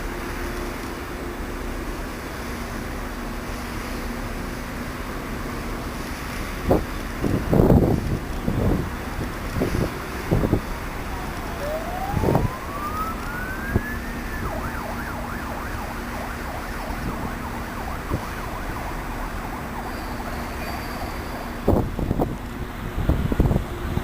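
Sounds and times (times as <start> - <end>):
steady background noise: 0.0 - 24.0
emergency vehicle siren: 11.1 - 21.8.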